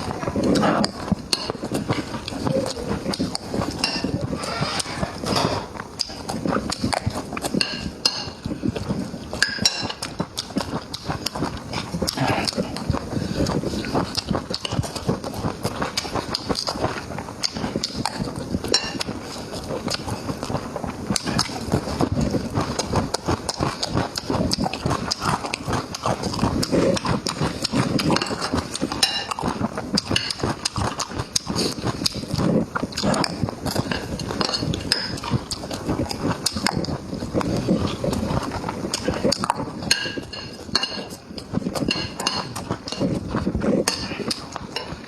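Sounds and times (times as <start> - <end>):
person chewing food: 0.0 - 45.0
wet lip-smacks and mouth clicks: 5.8 - 7.6, 10.0 - 18.4, 19.0 - 40.0.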